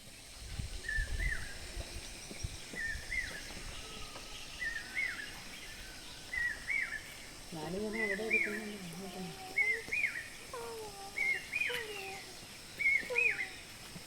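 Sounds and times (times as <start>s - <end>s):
faint high steady hiss: 0.0s - 14.0s
bird whistled call: 12.8s - 13.6s.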